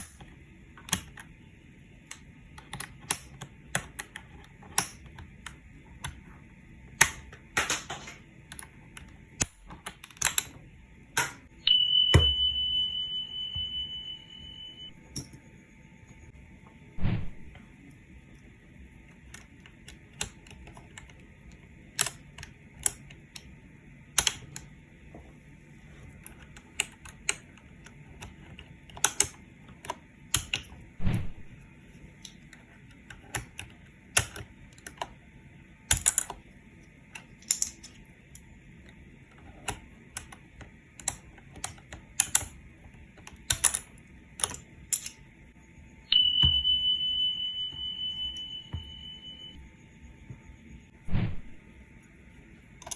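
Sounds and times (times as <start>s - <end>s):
high electronic beep: 11.6s - 15.1s, 46.1s - 49.9s.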